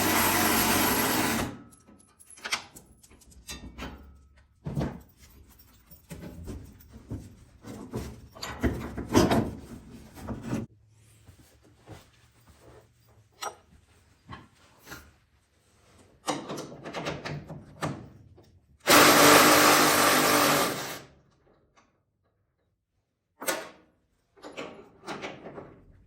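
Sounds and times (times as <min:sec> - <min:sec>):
handheld power tool running: 0:00.0 - 0:01.6, 0:18.8 - 0:21.1
parts knocking and clattering: 0:00.0 - 0:10.7, 0:15.9 - 0:18.9, 0:23.4 - 0:26.0.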